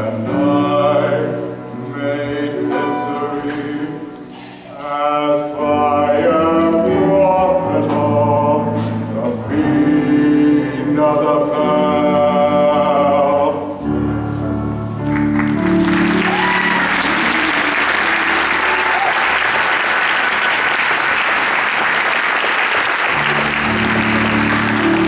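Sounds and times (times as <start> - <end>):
held instrumental chord: 9.5 - 19.6, 23.1 - 25.0
audience applause: 15.0 - 25.0.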